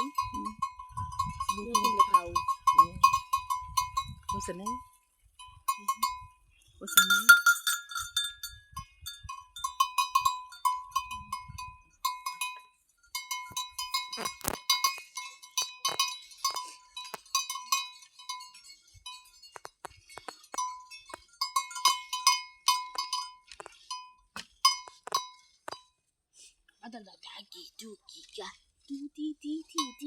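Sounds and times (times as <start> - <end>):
cowbells clanking: 0.0 - 26.0, 29.5 - 30.0.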